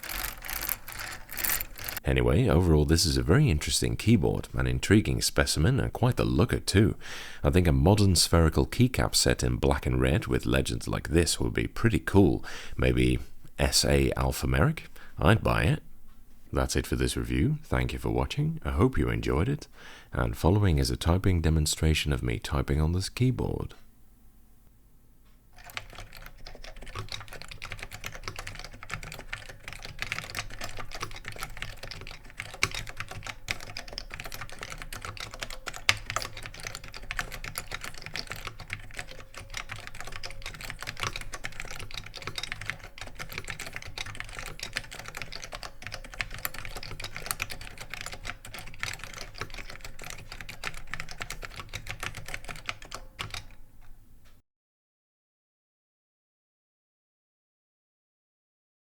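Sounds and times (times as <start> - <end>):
fast typing on keyboard: 0.0 - 2.0, 25.6 - 53.6.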